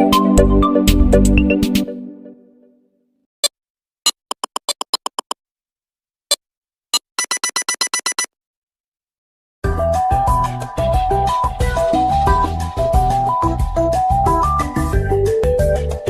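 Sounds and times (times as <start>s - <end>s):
phone ringtone beeps: 7.0s - 8.3s.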